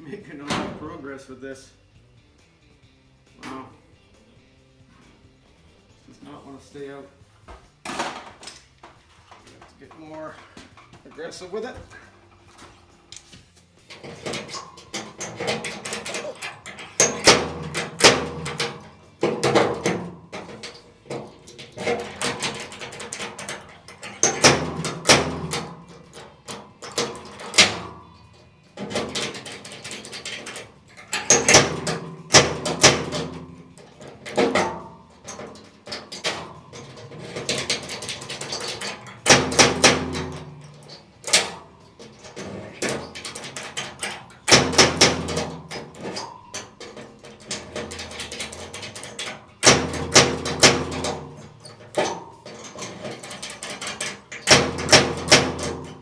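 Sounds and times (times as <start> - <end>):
metallic clacks and knocks: 7.7 - 56.0.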